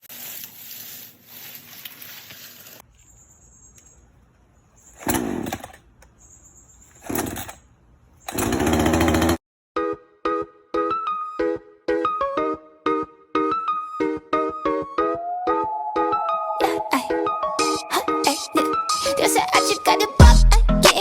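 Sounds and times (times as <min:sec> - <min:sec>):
chainsaw revving: 0:05.0 - 0:05.8, 0:06.9 - 0:07.6, 0:08.3 - 0:09.4.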